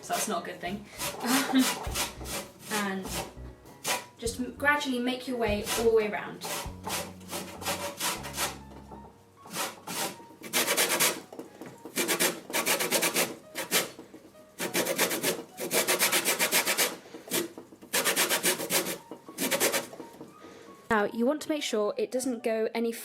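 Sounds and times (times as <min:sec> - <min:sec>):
lemon rasping on grater: 0:00.0 - 0:04.1, 0:05.5 - 0:08.6, 0:09.5 - 0:11.2, 0:11.9 - 0:14.0, 0:14.6 - 0:20.0.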